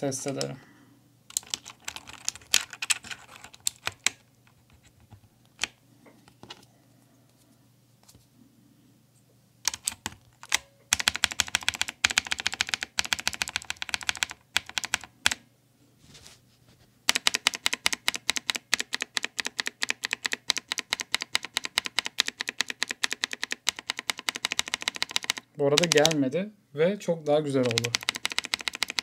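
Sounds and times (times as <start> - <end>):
mechanical keyboard typing: 1.3 - 4.2, 9.6 - 15.4, 17.1 - 26.2, 27.6 - 29.0.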